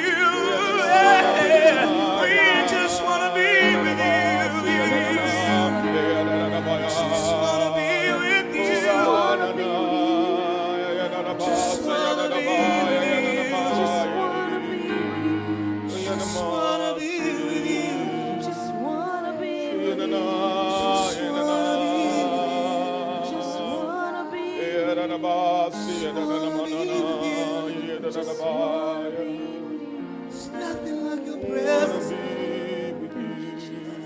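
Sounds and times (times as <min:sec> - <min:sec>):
sustained held chords: 0:00.0 - 0:26.0
person singing with vibrato: 0:00.0 - 0:34.0.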